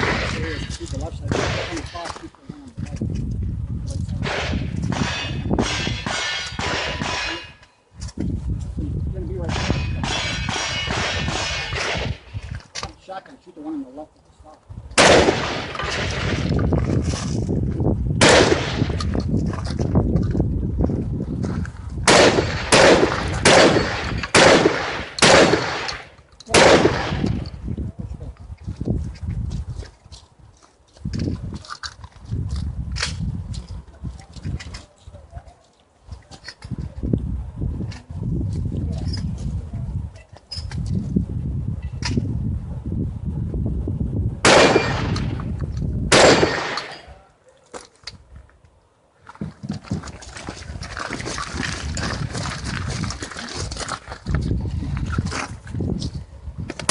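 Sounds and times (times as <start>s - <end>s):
gunshots with ringing tail: 9.4s - 12.2s, 15.0s - 16.5s, 18.2s - 19.0s, 22.1s - 27.5s, 44.4s - 45.3s, 46.1s - 47.1s.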